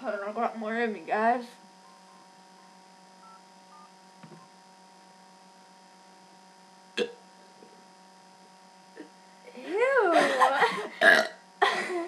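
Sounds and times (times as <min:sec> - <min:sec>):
steady electrical hum: 0:00.0 - 0:12.0
short abrupt burp: 0:07.0 - 0:07.2, 0:11.0 - 0:11.4.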